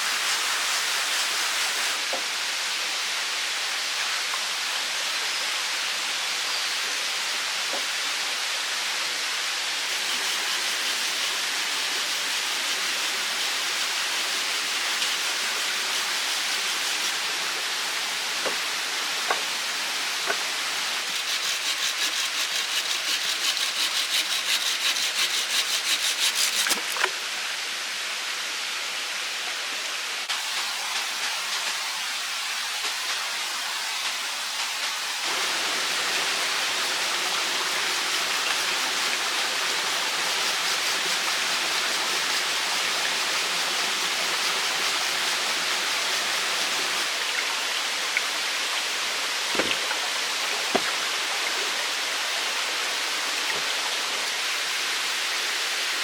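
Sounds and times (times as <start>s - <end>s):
running water rushing: 0.0s - 5.2s, 7.4s - 28.4s, 29.6s - 56.0s
hand saw cutting wood: 9.9s - 17.2s, 20.8s - 27.1s, 35.2s - 47.1s
sharp knocks: 49.6s - 49.8s.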